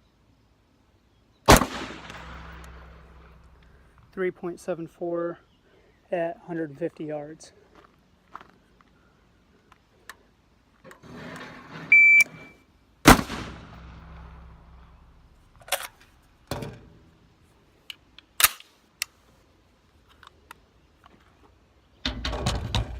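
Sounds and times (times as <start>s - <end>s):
rifle shots echoing: 1.5s - 3.6s, 13.1s - 15.3s
shot timer beep: 11.9s - 12.3s.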